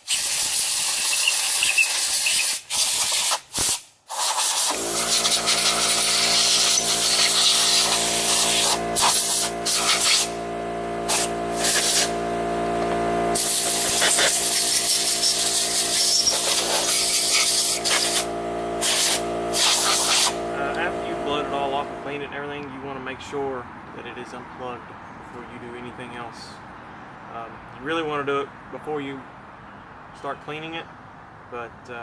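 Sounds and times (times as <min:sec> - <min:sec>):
compressed air blowgun blasting: 0:00.0 - 0:22.1
air compressor motor hum: 0:00.0 - 0:22.2.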